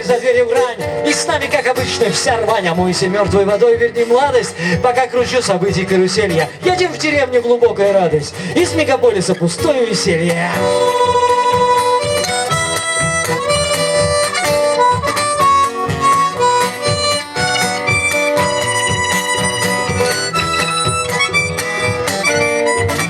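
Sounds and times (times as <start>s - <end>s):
harmonica melody: 0.0s - 7.1s, 8.3s - 23.0s
guitar: 0.0s - 23.0s
pulsing bass line: 10.6s - 23.0s.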